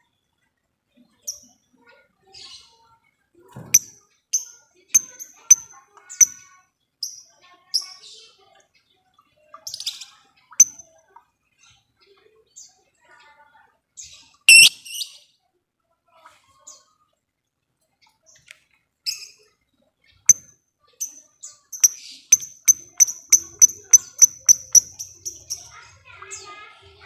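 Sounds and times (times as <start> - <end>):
bird ticking call: 3.7 - 6.4, 10.6 - 10.8, 14.5 - 14.8, 21.8 - 25.8
lovebird chirps: 3.8 - 6.4, 10.6 - 10.8, 14.5 - 15.1, 21.8 - 25.8
harsh bird call: 14.5 - 14.9.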